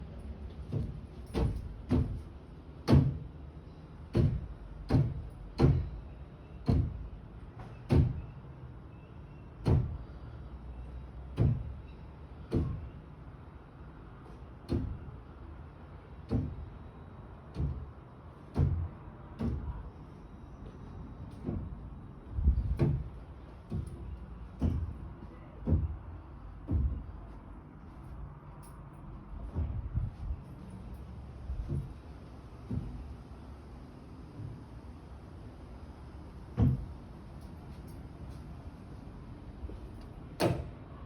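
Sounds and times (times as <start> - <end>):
heavy thuds through ceiling: 0.6 - 3.3, 17.5 - 19.8, 21.3 - 27.4, 29.4 - 30.4, 31.4 - 33.2, 36.5 - 37.0.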